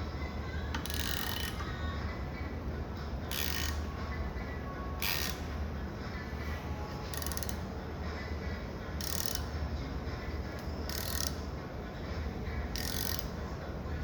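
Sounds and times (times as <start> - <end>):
steady low hum: 0.0 - 14.0
ratchet wrench clicking: 0.7 - 1.7, 3.3 - 3.9, 5.0 - 5.5, 7.1 - 7.7, 9.0 - 9.6, 10.6 - 11.5, 12.7 - 13.4.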